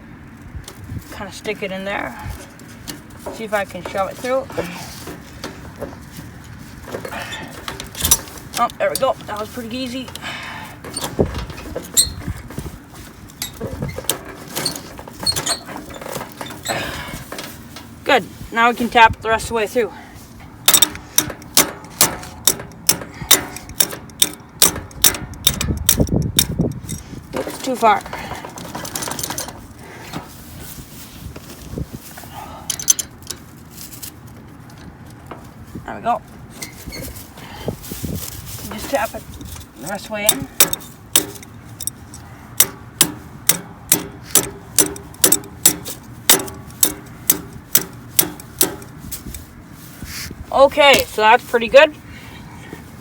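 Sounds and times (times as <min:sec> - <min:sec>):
hammer striking metal: 0:42.6 - 0:48.9.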